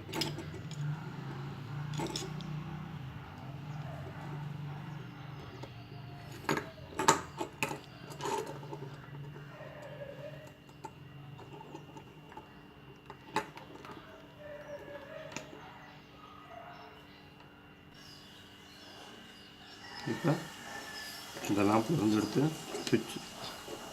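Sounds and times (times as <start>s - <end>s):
clicks and metallic clinks: 0.0s - 1.0s, 1.8s - 2.8s.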